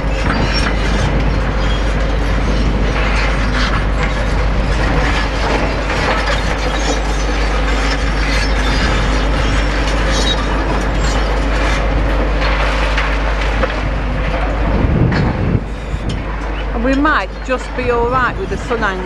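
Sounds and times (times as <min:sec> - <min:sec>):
rubble and metal crunching: 0:00.0 - 0:19.0.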